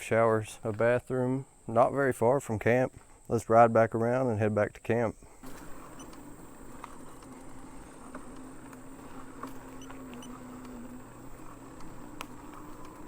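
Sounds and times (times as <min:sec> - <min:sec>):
electric motor whining: 0:05.3 - 0:13.0.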